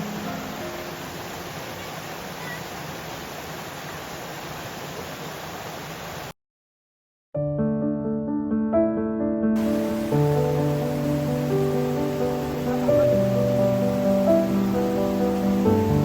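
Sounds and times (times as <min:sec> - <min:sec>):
stream water rushing: 0:00.0 - 0:06.3, 0:09.6 - 0:16.0
music: 0:07.4 - 0:16.0.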